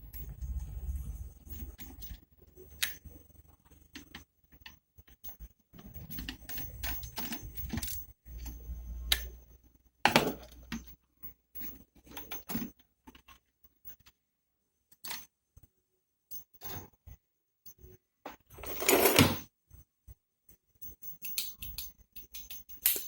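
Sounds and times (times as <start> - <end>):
low hum: 0.0 - 3.5
tools clicking and clattering: 4.0 - 9.3.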